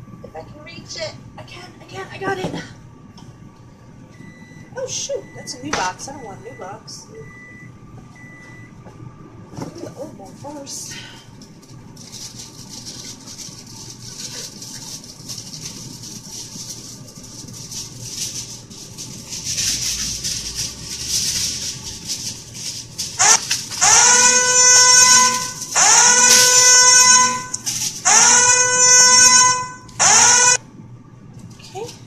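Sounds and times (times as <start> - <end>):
crinkling and rustling: 11.4 - 28.1
loud horn-like blasts: 23.2 - 30.6.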